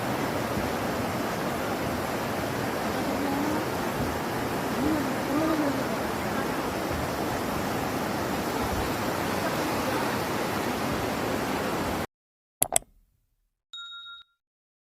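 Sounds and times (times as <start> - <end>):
floodwater rushing: 0.0 - 12.1
sharp clicks: 12.6 - 13.1
electronic beep: 13.8 - 14.4.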